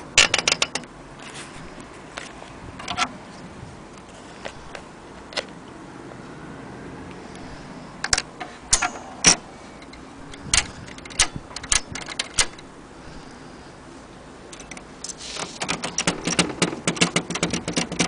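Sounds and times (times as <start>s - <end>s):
manual typewriter keys clacking: 10.3s - 12.6s, 14.5s - 18.0s.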